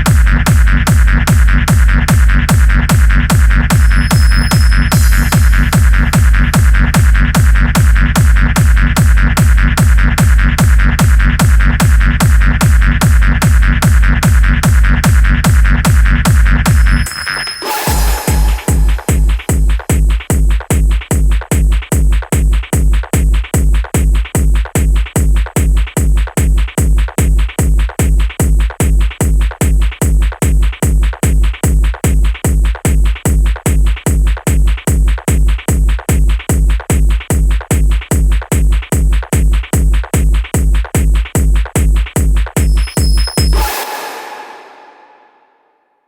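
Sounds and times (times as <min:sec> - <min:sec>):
heavy kick drum: 0:00.0 - 0:17.1, 0:17.9 - 0:43.7
electronic dance music: 0:00.1 - 0:08.4, 0:15.9 - 0:19.7, 0:42.6 - 0:45.6
ringing final hit: 0:03.8 - 0:06.3, 0:16.8 - 0:19.6, 0:42.6 - 0:45.9.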